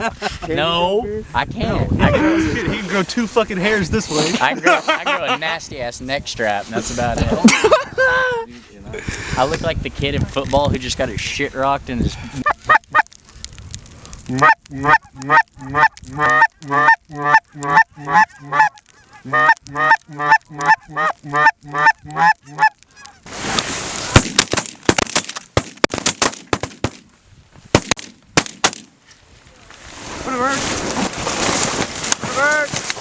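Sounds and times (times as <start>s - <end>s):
snow goose honking: 14.3s - 23.3s
shotgun shots: 24.1s - 27.1s, 27.7s - 28.9s.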